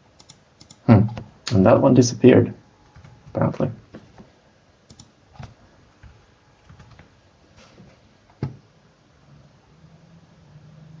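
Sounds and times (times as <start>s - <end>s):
keyboard keys clicking: 0.2s - 1.3s, 4.9s - 7.1s.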